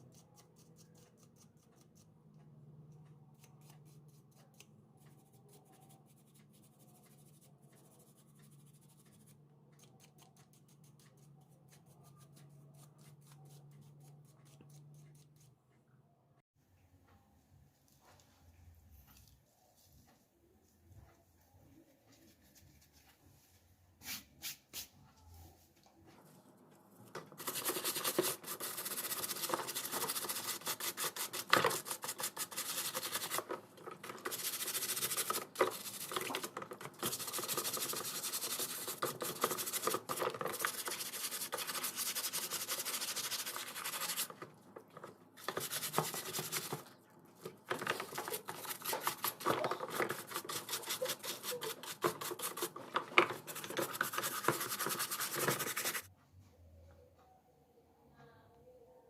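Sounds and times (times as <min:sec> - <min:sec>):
hand rubbing and scraping: 0:21.4 - 0:56.1
sharp scratches: 0:27.3 - 0:44.4, 0:45.4 - 0:46.9, 0:47.7 - 0:56.1.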